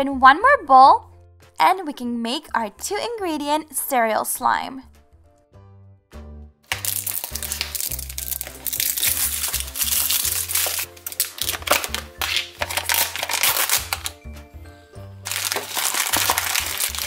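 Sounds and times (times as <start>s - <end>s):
background music with bass line: 5.0s - 17.0s
plastic packaging crinkling: 6.7s - 14.2s, 15.2s - 17.0s.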